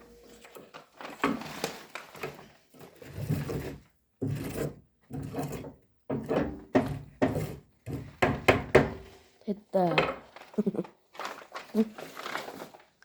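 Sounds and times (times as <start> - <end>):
wooden knocks and scrapes: 1.2 - 9.3.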